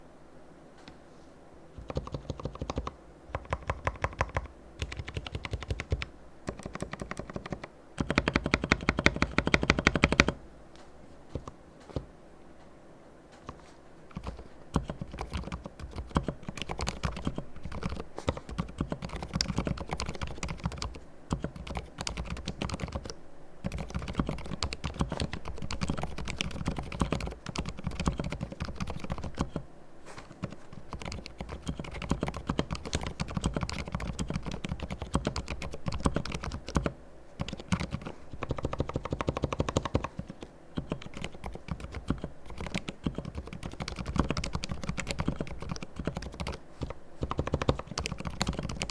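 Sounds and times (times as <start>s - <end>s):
soft mechanical keyboard typing: 1.8s - 10.4s, 11.3s - 12.1s, 13.3s - 29.6s, 30.2s - 48.9s.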